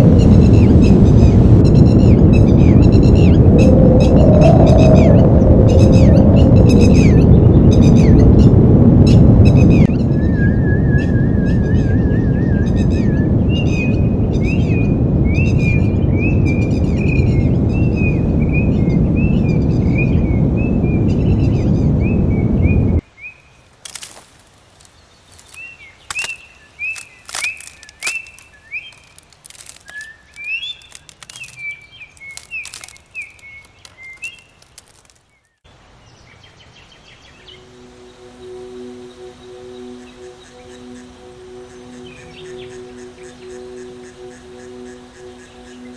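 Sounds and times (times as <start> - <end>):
bird calls: 23.3 - 35.2.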